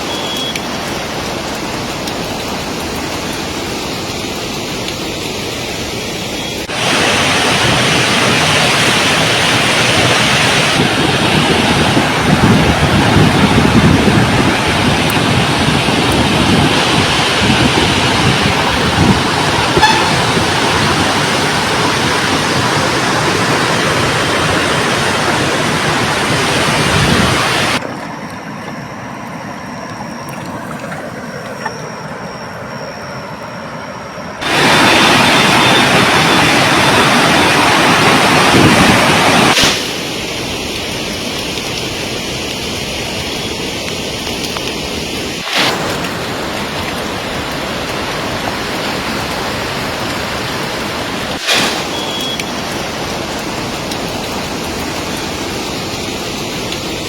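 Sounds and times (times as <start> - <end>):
rushing floodwater: 0.0 - 57.0
faint high whine: 27.8 - 38.4.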